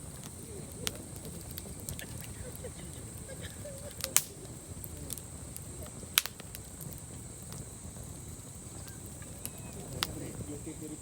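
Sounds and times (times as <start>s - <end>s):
campfire popping and crackling: 0.0s - 11.0s.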